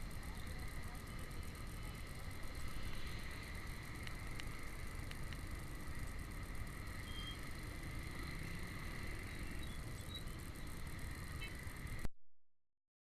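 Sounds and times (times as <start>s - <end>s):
road traffic noise: 0.0s - 12.1s.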